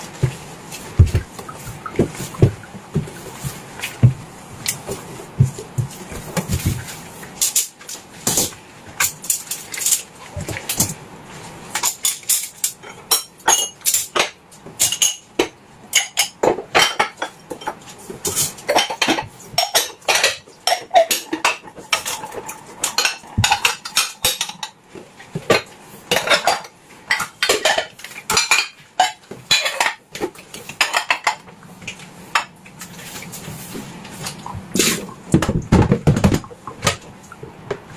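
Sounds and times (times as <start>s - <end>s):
dishes and cutlery clinking: 11.7s - 24.8s, 25.4s - 31.6s.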